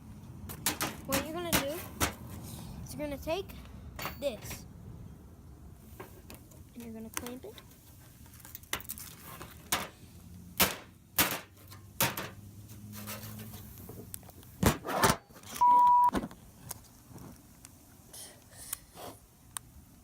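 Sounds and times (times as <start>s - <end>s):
short electronic beep: 15.6s - 16.1s.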